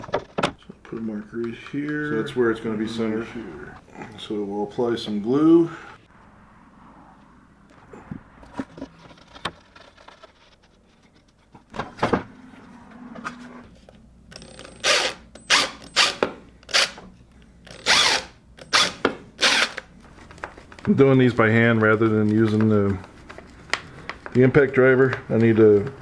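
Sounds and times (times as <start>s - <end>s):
power drill drilling into wood: 17.8s - 19.8s.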